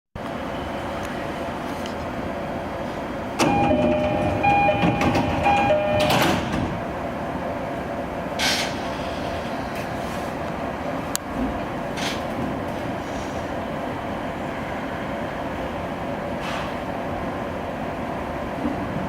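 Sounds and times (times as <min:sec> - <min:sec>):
train doors sliding shut: 0:02.8 - 0:07.4, 0:08.3 - 0:17.2
high-low two-tone chime: 0:03.4 - 0:06.2
hiss of air: 0:13.0 - 0:13.6.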